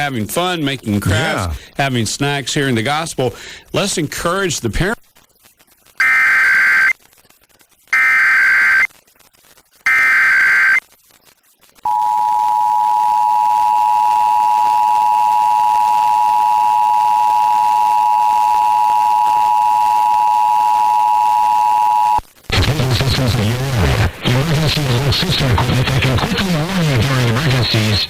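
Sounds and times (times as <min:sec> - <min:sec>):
warbling digital data bursts: 0:05.2 - 0:11.9
two-tone attention signal: 0:11.9 - 0:22.2.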